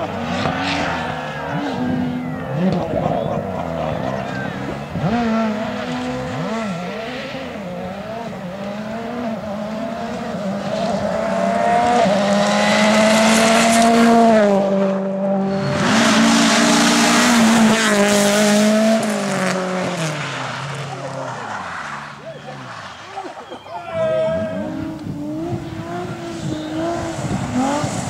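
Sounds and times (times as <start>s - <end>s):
rally car engine revving: 0.0s - 23.6s, 24.3s - 28.0s.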